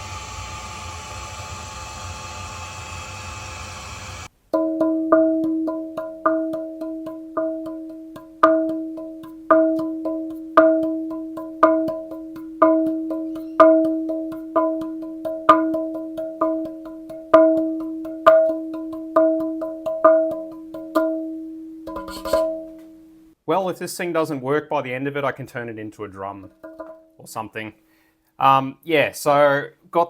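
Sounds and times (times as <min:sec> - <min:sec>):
metal part tapped rhythmically: 0:04.5 - 0:22.9, 0:26.4 - 0:27.2.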